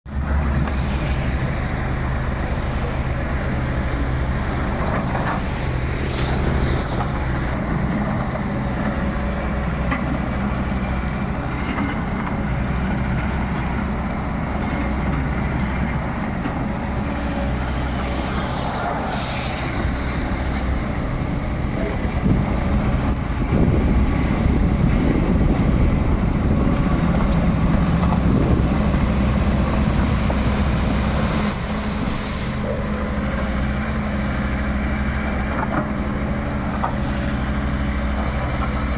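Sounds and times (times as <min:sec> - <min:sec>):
excavator diesel engine running: 0:00.1 - 0:38.9.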